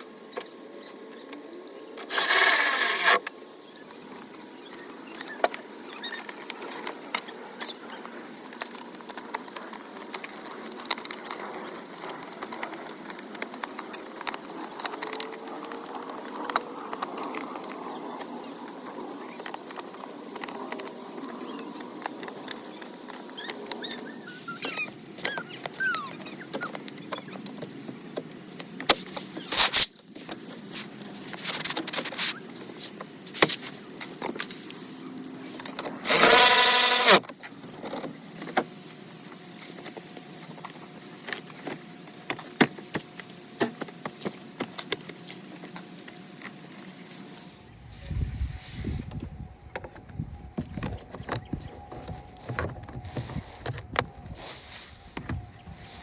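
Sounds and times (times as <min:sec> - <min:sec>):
handling clicks rubs and scrapes: 0:00.0 - 0:56.0
rustling or scraping bursts: 0:02.0 - 0:03.5, 0:34.5 - 0:37.7.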